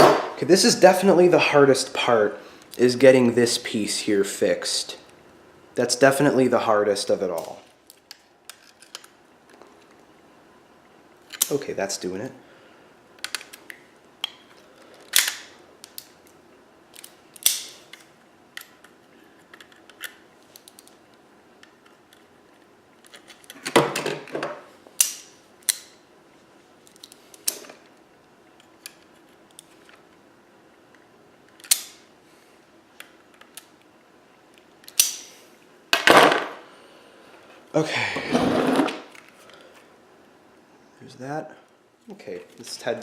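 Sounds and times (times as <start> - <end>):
loud scraping: 38.2 - 39.1.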